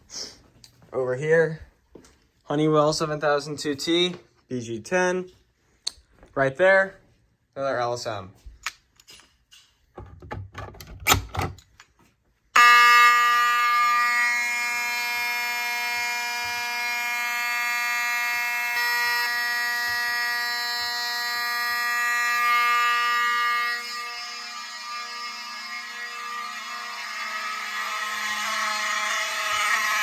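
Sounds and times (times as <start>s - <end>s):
fire alarm horn: 12.4s - 30.0s.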